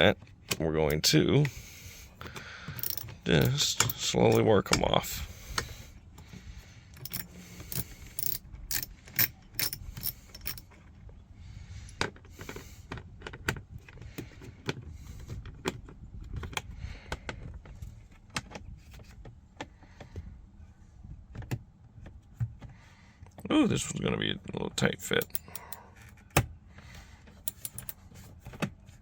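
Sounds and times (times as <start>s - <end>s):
socket ratchet clicking: 2.7s - 4.4s, 7.0s - 10.6s, 25.2s - 25.7s, 27.4s - 28.0s.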